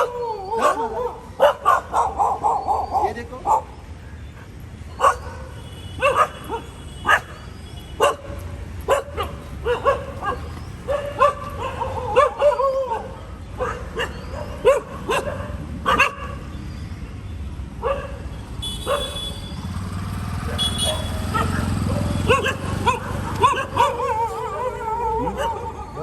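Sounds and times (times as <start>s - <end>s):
dog barking and yipping: 0.0s - 3.8s, 5.0s - 16.5s, 17.8s - 19.4s, 20.3s - 26.0s
dog whining yelps: 0.0s - 3.8s, 5.0s - 8.3s, 8.9s - 16.5s, 20.5s - 26.0s.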